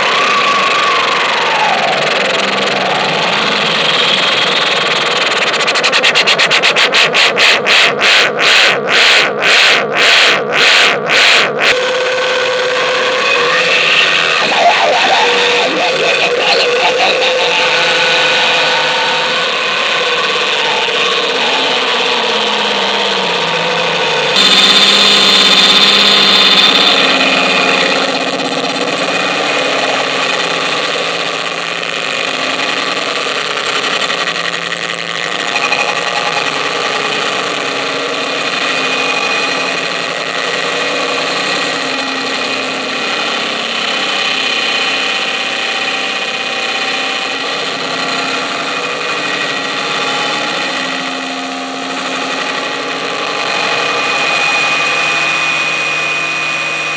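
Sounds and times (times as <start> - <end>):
harsh electronic noise music: 0.0 - 32.9.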